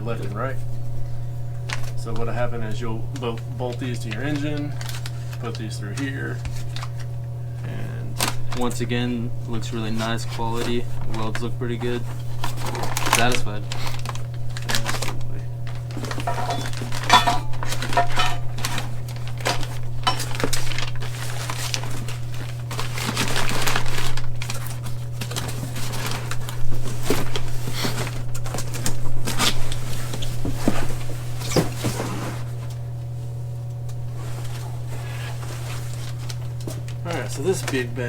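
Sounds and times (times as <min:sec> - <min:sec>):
vending machine hum: 0:00.0 - 0:38.0
metal parts clinking: 0:16.2 - 0:18.8, 0:19.5 - 0:20.4.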